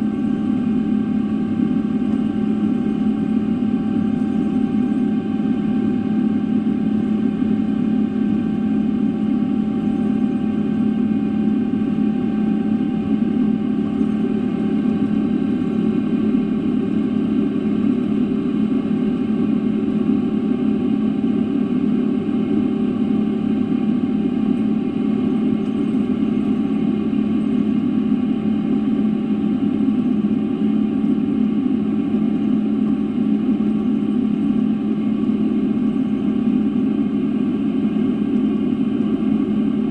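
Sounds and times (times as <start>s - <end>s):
faint steady whine: 0.0s - 39.9s
jet engine cabin rumble: 0.0s - 39.9s.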